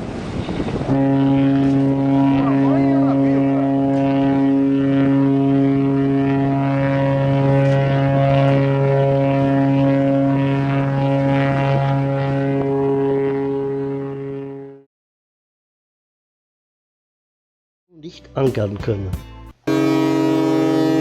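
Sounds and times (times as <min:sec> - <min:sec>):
ship's horn blast: 0:00.0 - 0:14.9, 0:19.7 - 0:21.0.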